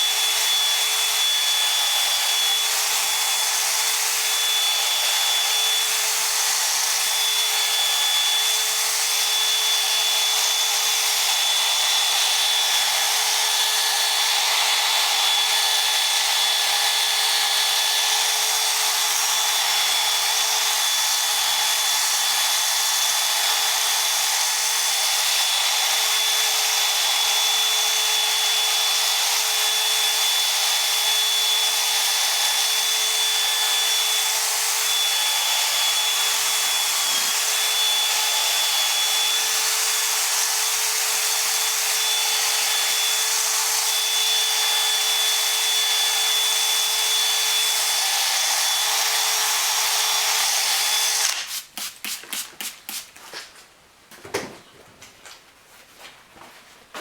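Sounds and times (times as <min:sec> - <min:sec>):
power drill whining: 0:00.0 - 0:51.7.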